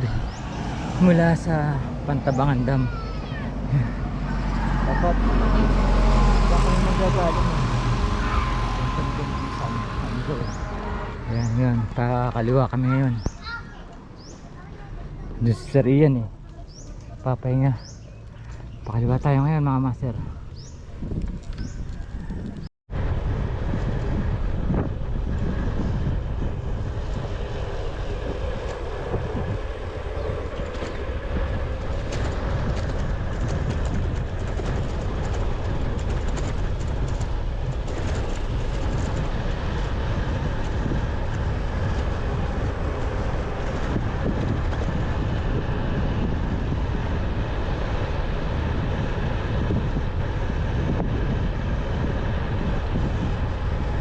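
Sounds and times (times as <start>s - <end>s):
vehicle road noise: 0.0s - 54.0s
wind rumbling on microphone: 0.0s - 54.0s.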